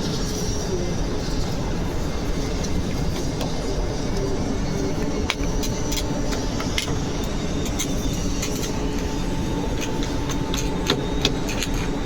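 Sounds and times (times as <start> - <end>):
machine hum: 1.6 - 12.0.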